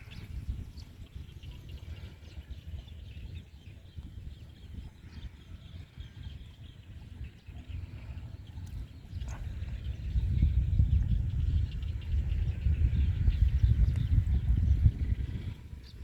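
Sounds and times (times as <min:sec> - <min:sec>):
steady low rumble: 0:07.8 - 0:16.0.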